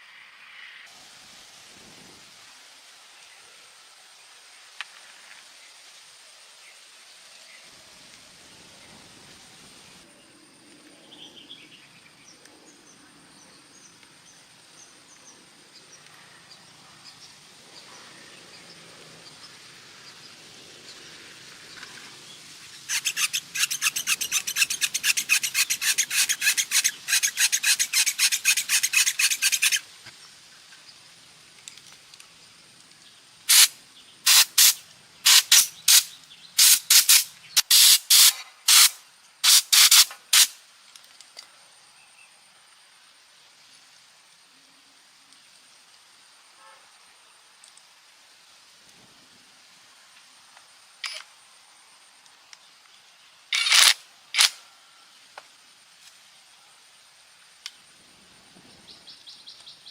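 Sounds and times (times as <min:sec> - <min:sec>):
abrasive strokes rasping: 0:22.8 - 0:29.8.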